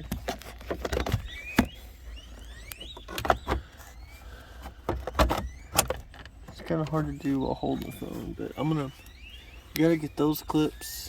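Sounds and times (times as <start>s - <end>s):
faint rising chirps: 6.9s - 11.0s.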